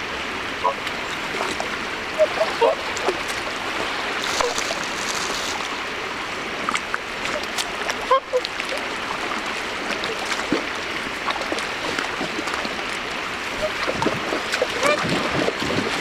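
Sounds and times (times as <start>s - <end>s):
swans calling: 2.1s - 3.3s, 8.0s - 8.7s, 13.5s - 15.2s.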